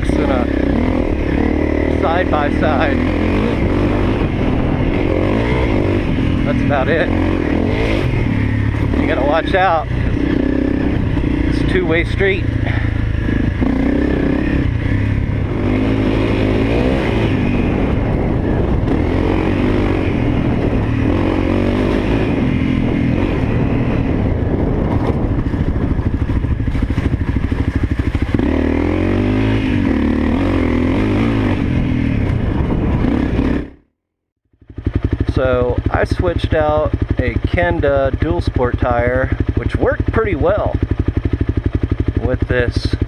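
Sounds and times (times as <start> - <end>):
motorcycle engine revving: 0.0 - 43.0.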